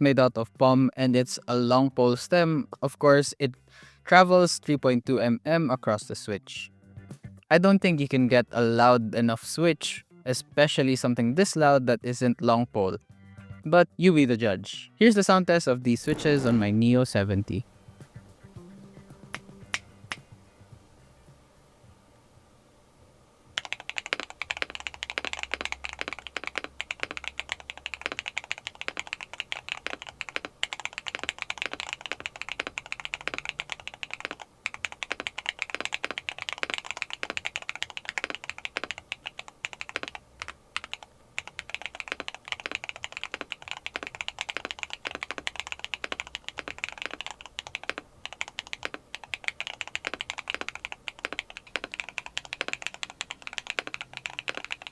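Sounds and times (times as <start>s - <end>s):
fast typing on mechanical keyboard: 23.6s - 54.9s.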